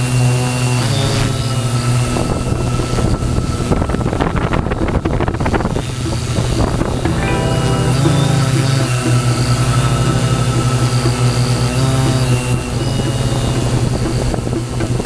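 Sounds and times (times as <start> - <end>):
wind buffeting microphone: 1.7 - 7.2.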